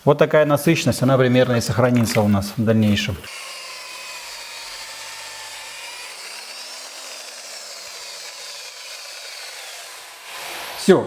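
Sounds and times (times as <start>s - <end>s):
small electric motor whirring: 3.0s - 10.9s.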